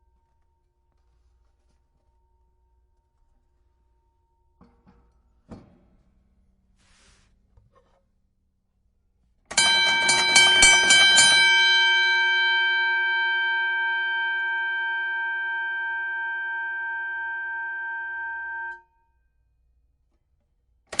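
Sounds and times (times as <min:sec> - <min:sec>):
boxing ring bell: 0:09.5 - 0:18.9.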